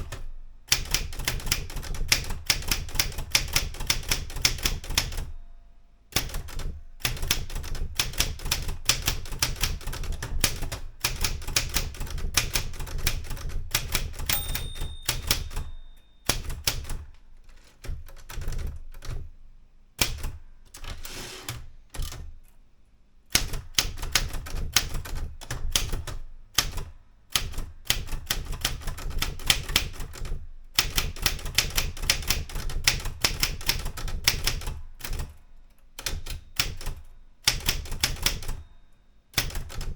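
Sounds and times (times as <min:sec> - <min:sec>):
typewriter key clacks: 0:06.2 - 0:19.1
typewriter bell ringing: 0:14.2 - 0:16.5.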